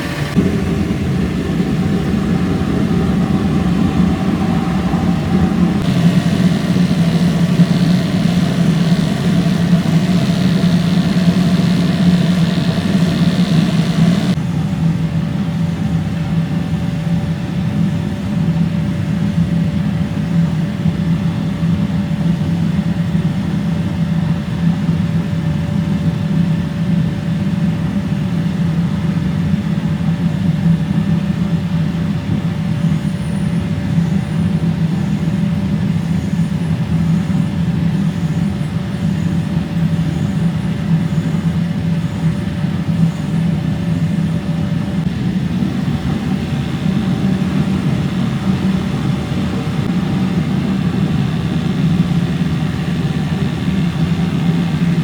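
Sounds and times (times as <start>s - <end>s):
thin steady whine: 0.0s - 14.4s, 34.3s - 55.0s
low machine drone: 0.0s - 14.6s, 44.6s - 55.0s.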